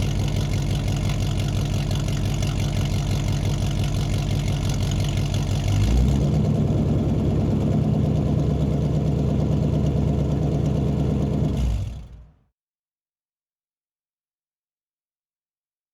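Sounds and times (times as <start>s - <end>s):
car engine idling: 0.0s - 12.4s.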